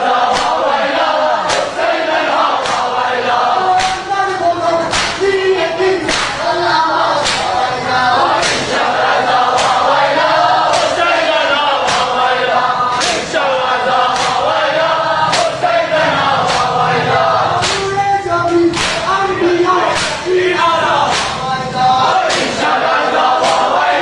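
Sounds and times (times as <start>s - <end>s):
men chanting in unison: 0.0s - 24.0s.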